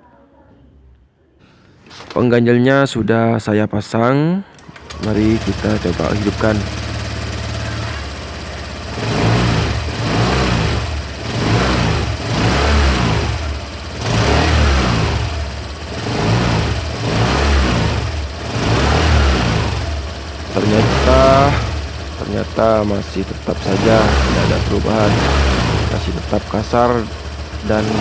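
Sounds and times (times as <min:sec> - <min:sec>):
scooter engine revving: 0:04.6 - 0:28.0.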